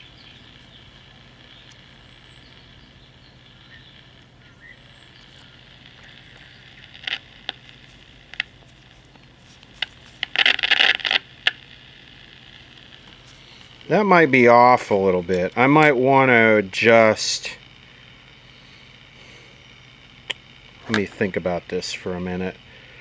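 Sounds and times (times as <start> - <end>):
faint radio hiss: 0.0 - 23.0
radio hum: 0.0 - 23.0
static crackles: 0.0 - 23.0.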